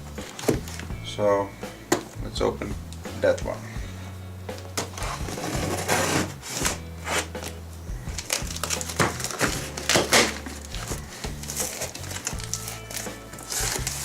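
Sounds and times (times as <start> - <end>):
package tearing and crinkling: 8.2 - 14.0.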